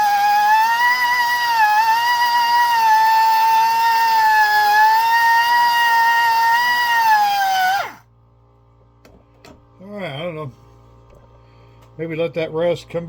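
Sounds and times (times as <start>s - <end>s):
air grinder whining against stone: 0.0s - 8.0s.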